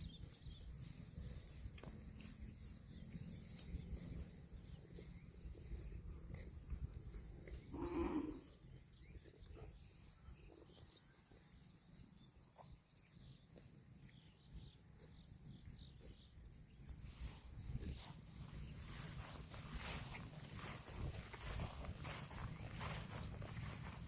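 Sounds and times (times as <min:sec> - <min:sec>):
cow mooing: 0:07.7 - 0:08.6.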